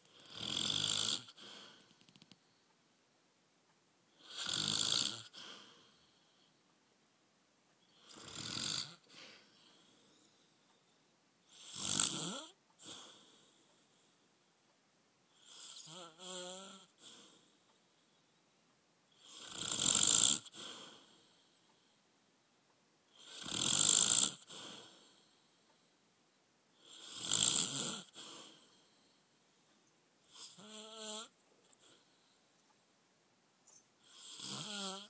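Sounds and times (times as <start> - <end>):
man snoring: 0.1 - 1.6, 4.2 - 5.4, 7.9 - 9.7, 11.5 - 13.2, 15.4 - 17.1, 19.2 - 21.2, 23.2 - 25.1, 26.8 - 28.7, 30.3 - 32.0, 34.0 - 35.0.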